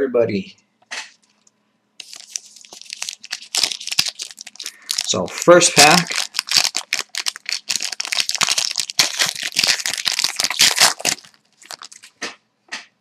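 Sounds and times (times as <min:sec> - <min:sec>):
card pack wrapper tearing and crinkling: 0:02.0 - 0:12.2.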